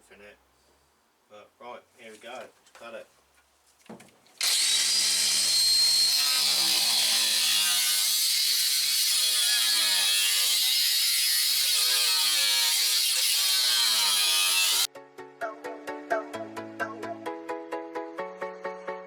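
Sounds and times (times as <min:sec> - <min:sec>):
power tool cutting steel: 0:04.4 - 0:14.9.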